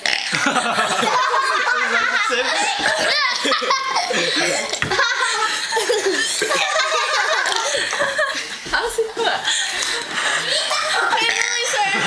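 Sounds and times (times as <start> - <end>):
child giggling: 0.3 - 8.4, 10.5 - 12.0
hearty laughter: 0.3 - 8.6.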